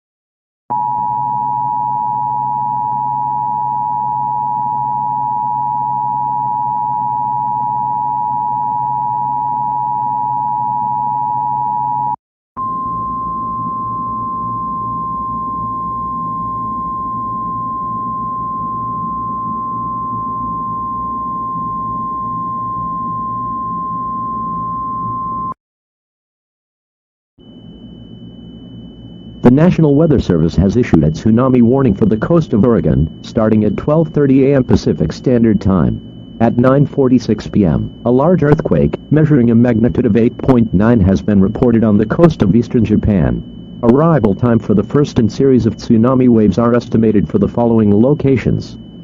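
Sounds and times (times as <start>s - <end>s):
dual-tone alarm: 0.7s - 25.6s, 27.4s - 49.0s
steady warning tone: 0.7s - 25.6s, 27.4s - 49.0s
low hum and hiss: 27.4s - 49.0s.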